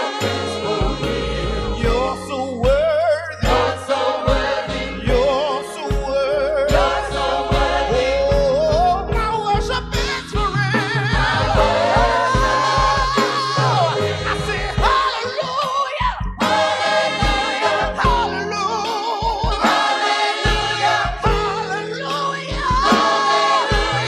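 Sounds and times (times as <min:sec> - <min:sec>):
choir voices: 0:00.0 - 0:02.3, 0:03.4 - 0:09.0, 0:11.0 - 0:24.0
band with bass and drums: 0:00.0 - 0:24.0
lead voice singing with vibrato: 0:00.0 - 0:24.0.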